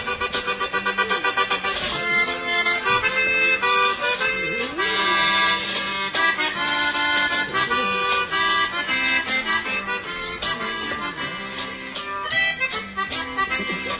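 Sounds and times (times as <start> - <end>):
accordion music with steady beat: 0.0 - 13.9.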